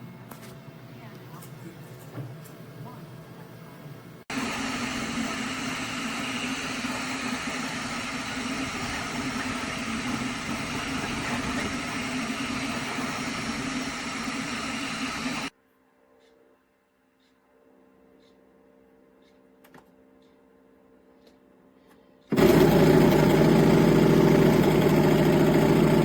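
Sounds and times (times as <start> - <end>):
printer mechanical whir: 4.3 - 15.5, 22.3 - 26.0.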